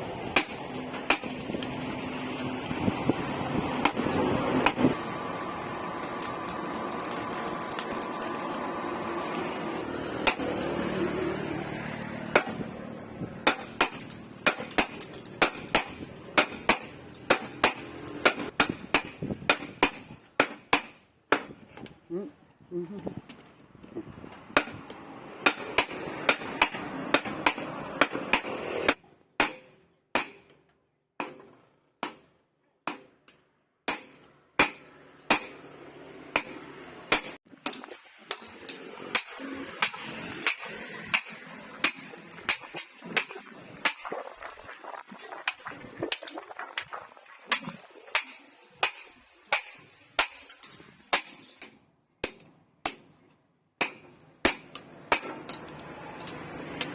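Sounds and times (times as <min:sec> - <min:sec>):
hammer striking steel on anvil: 0:00.4 - 0:01.4, 0:09.8 - 0:10.7, 0:12.3 - 0:12.6, 0:13.4 - 0:21.5, 0:24.6 - 0:30.6, 0:33.9 - 0:35.7, 0:36.3 - 0:44.0, 0:47.6 - 0:53.1.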